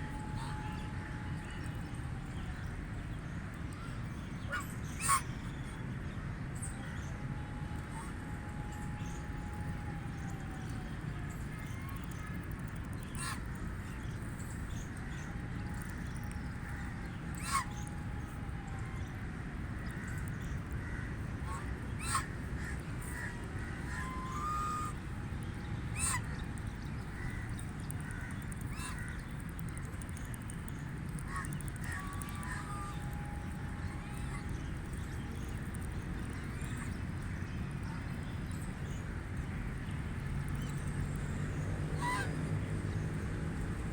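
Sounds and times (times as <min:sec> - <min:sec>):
low background rumble: 0:00.0 - 0:43.9
geese honking: 0:17.4 - 0:17.9, 0:21.4 - 0:22.3, 0:23.8 - 0:25.0, 0:26.0 - 0:26.3, 0:28.7 - 0:29.1, 0:31.3 - 0:34.6, 0:42.0 - 0:42.4.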